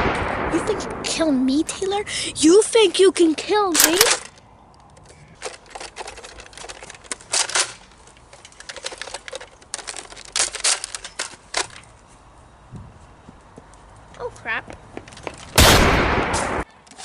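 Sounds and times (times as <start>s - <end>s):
toy blaster clicks: 3.7s - 4.4s.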